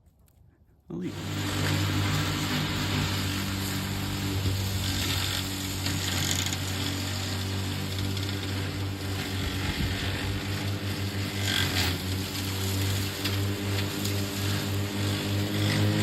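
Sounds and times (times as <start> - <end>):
electric lawn mower humming: 0.9 - 16.0.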